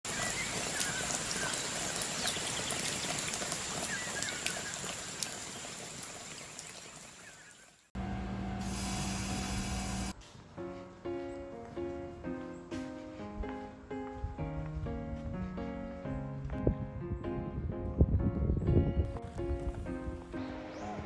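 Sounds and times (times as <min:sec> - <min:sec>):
music: 0:10.3 - 0:21.0.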